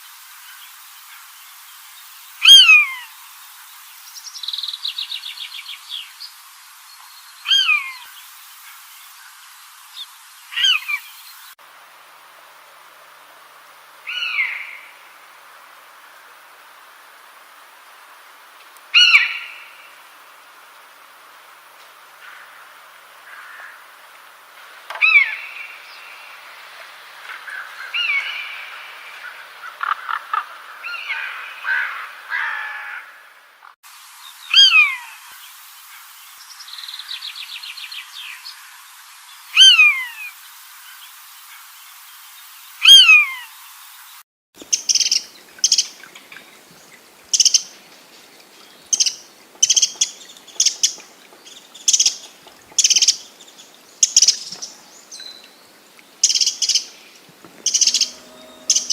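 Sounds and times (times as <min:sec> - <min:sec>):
jumble of bird chirps: 0:48.8 - 0:55.5, 0:56.2 - 0:58.9
downward-sliding whistled bird calls: 0:57.4 - 0:58.9
buzzy bird trill: 0:57.5 - 0:58.9
short high bird chirps: 0:57.5 - 0:58.9.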